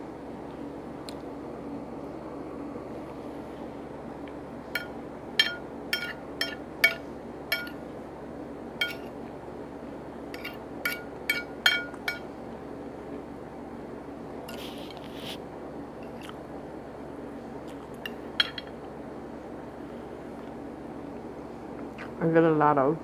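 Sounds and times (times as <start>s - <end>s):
utensil clinking against a dish: 4.8s - 7.8s, 8.8s - 9.2s, 10.3s - 12.3s.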